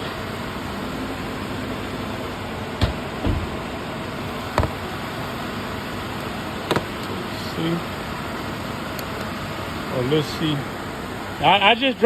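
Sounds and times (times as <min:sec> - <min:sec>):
car engine idling: 0:00.0 - 0:12.0
short sharp knocks: 0:04.6 - 0:04.8.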